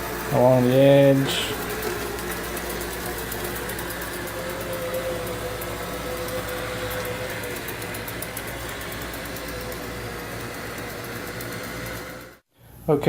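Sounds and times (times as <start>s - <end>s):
robot vacuum cleaner whirring: 0.0s - 12.4s.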